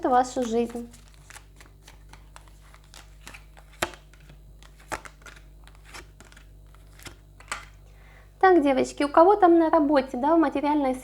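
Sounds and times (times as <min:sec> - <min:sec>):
cards rustling and clicking: 0:00.0 - 0:07.8
cards tapping on table: 0:01.2 - 0:07.7.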